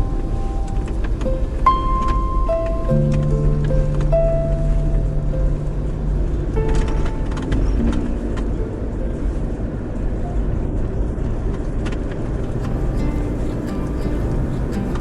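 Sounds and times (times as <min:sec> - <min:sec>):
van road and engine rumble: 0:00.0 - 0:15.0.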